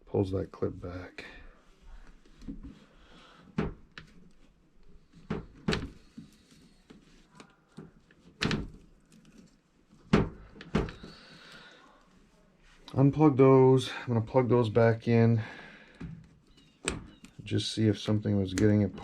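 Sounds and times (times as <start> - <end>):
connectors clicking and knocking: 18.2 - 19.0.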